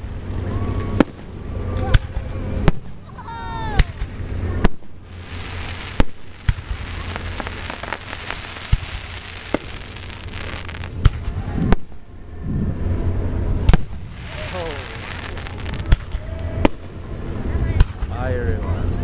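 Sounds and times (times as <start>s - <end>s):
firework crackling: 0.0s - 12.1s, 12.9s - 18.4s
fireworks shells bursting: 3.8s - 11.3s.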